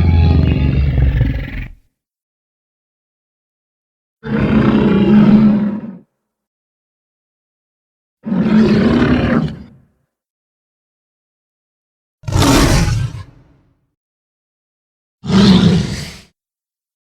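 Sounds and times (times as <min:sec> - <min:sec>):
dinosaur roars: 0:00.0 - 0:01.8, 0:04.2 - 0:05.9, 0:12.2 - 0:13.5, 0:15.2 - 0:16.3.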